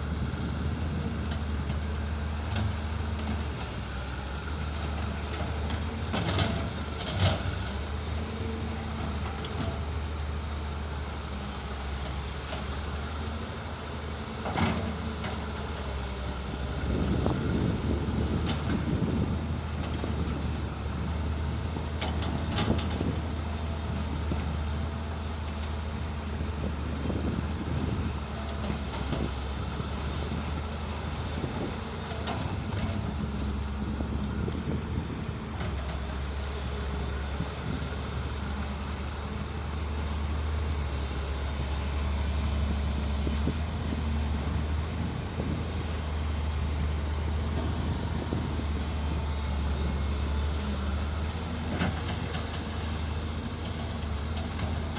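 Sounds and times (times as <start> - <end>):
excavator diesel engine droning: 0.0 - 54.9.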